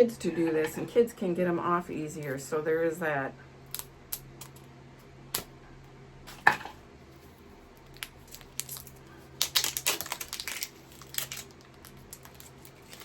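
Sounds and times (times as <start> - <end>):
plastic crinkling and crackling: 7.1 - 13.0
plastic packaging clicks and snaps: 7.7 - 13.0.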